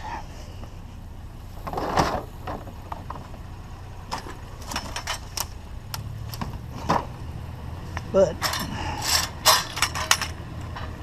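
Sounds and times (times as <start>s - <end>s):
steady low rumble: 0.0s - 11.0s
small metallic clinks: 8.4s - 10.8s.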